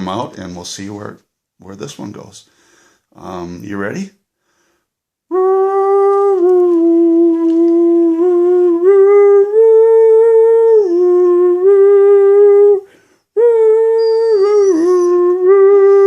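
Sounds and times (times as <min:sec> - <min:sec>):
man singing: 0:05.3 - 0:12.8
dog howling: 0:05.3 - 0:16.0.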